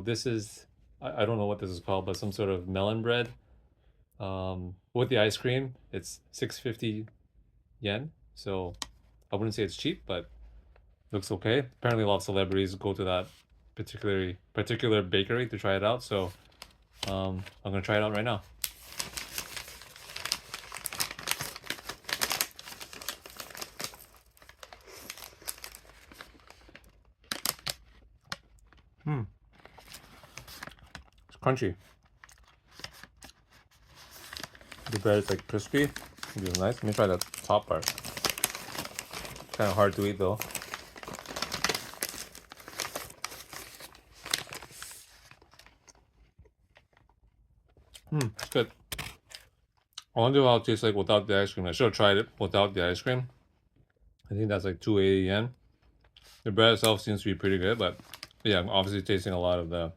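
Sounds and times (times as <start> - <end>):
wrapper crinkling and rustling: 16.3 - 28.9, 29.5 - 46.0, 56.2 - 59.3
bread crust crackling: 18.6 - 28.7, 33.2 - 45.6.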